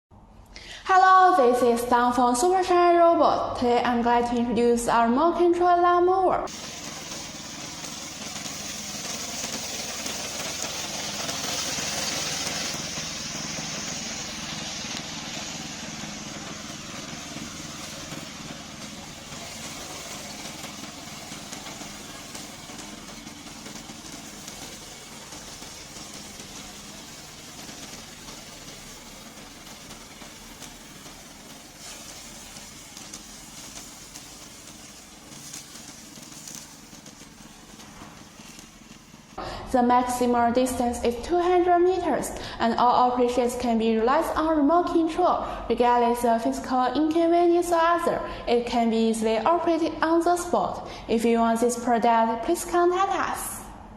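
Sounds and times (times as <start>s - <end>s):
mower engine running: 6.5s - 39.4s.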